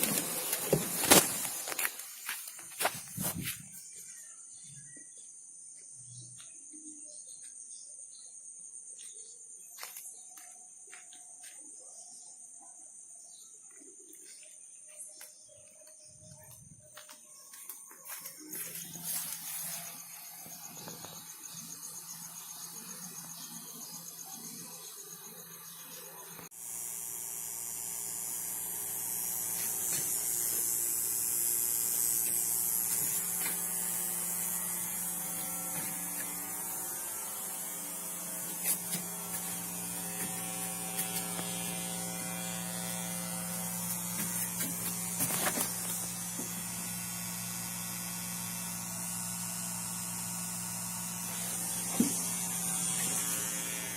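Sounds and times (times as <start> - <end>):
electrical hum and buzz: 0.0 - 4.0, 16.0 - 53.9.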